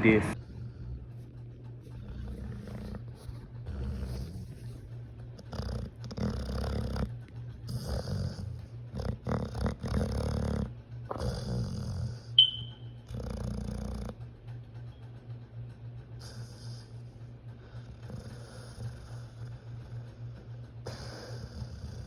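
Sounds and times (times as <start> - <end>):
dog snoring: 0.3 - 12.4, 13.0 - 14.2, 16.2 - 22.0
brief high-pitched chirp: 12.4 - 12.8.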